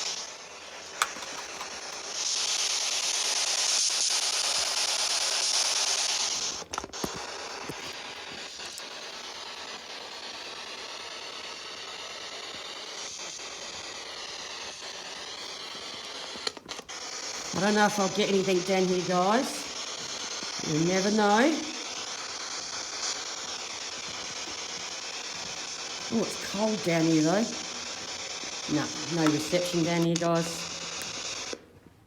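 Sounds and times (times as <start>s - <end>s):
radio static hiss: 0.0s - 32.0s
short radio clicks: 1.0s - 2.1s.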